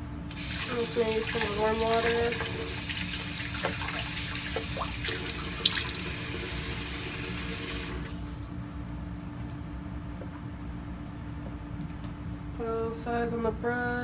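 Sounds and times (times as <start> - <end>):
faucet running water: 0.3 - 8.6.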